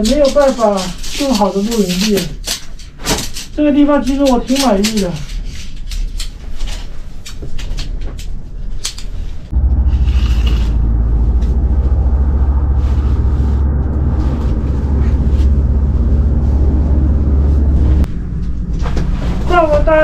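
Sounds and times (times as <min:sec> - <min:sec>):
wind buffeting microphone: 0:09.3 - 0:20.0.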